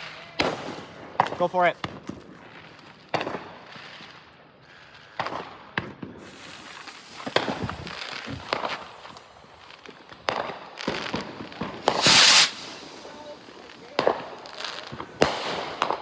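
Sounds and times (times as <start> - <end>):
firework bangs and pops: 0.0 - 16.0
firework rocket launching hiss: 6.1 - 16.0.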